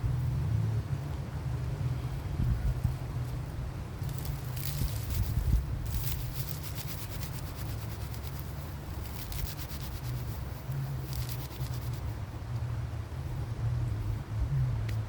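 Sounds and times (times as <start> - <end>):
steady low rumble: 0.0 - 15.0
rapid rasping strokes: 4.0 - 12.2.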